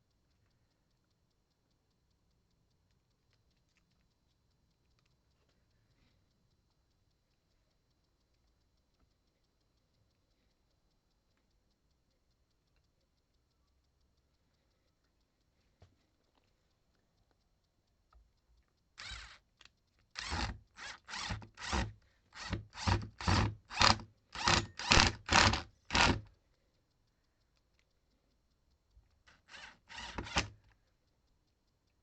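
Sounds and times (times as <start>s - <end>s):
hand tool rasping: 20.2s - 26.2s, 29.3s - 30.5s.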